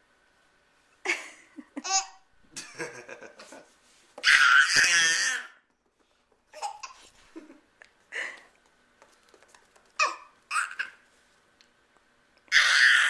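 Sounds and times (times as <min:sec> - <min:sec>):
baby laughing and babbling: 0:01.8 - 0:02.2, 0:04.2 - 0:05.5, 0:06.5 - 0:07.0, 0:10.0 - 0:11.0.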